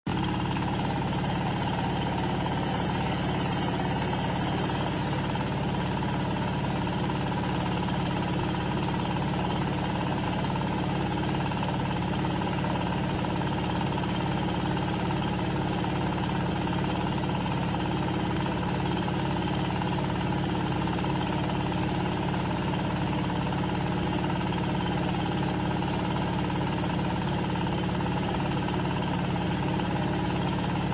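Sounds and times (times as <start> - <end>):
baling machine humming: 0.1 - 9.8.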